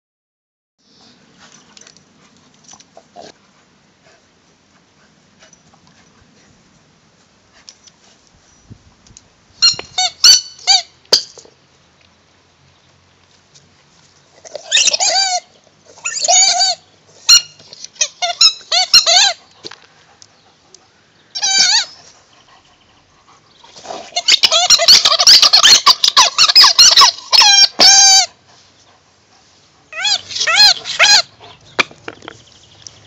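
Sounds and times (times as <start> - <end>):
squeaky dog toy squeaking: 9.6 - 11.0, 14.4 - 19.4, 21.4 - 22.0, 24.1 - 28.4, 29.9 - 32.1.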